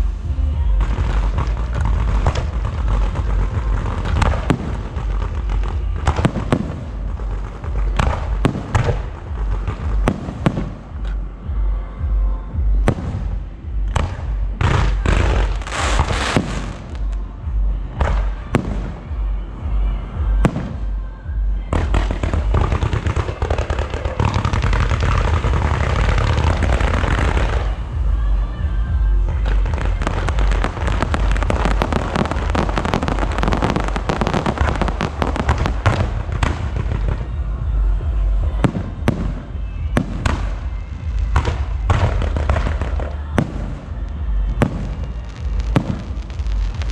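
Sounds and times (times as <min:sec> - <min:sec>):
fireworks crackling and booming: 0:00.0 - 0:46.9
heavy low rumble: 0:00.0 - 0:46.9.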